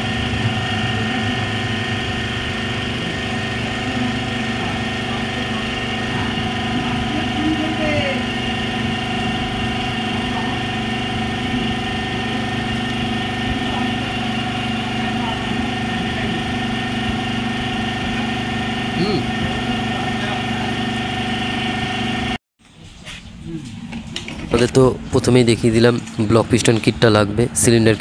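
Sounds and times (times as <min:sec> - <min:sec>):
steady mechanical hum: 0:00.0 - 0:28.0.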